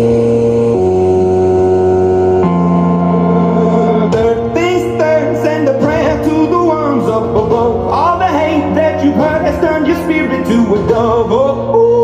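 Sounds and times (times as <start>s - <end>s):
pop song through portable speaker: 0.0s - 12.0s.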